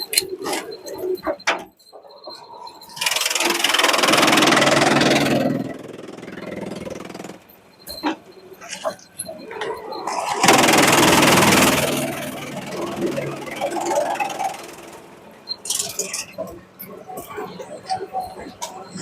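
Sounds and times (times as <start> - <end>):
heavy machinery running: 2.7 - 8.1, 8.7 - 19.0.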